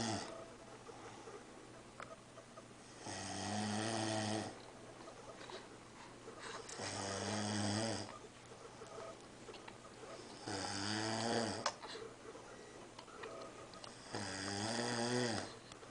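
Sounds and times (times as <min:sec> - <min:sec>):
man snoring: 0:00.0 - 0:00.3, 0:03.0 - 0:04.6, 0:06.8 - 0:08.1, 0:10.4 - 0:11.6, 0:13.9 - 0:15.6.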